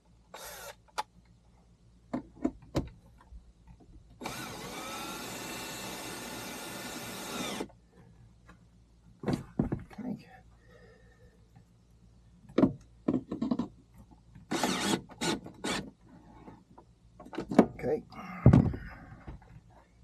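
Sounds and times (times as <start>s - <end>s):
cordless drill spinning: 0.3s - 0.8s, 4.2s - 7.7s, 14.5s - 15.8s.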